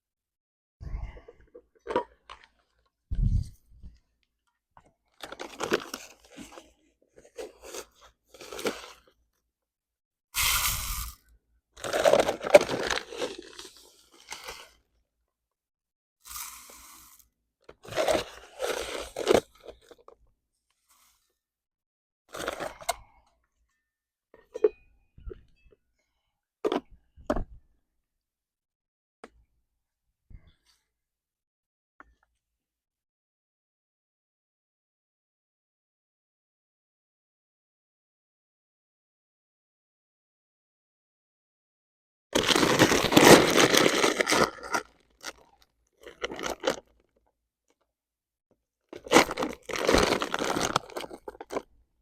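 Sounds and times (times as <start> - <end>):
close crunching and rustling: 42.4 - 46.8, 49.0 - 51.6.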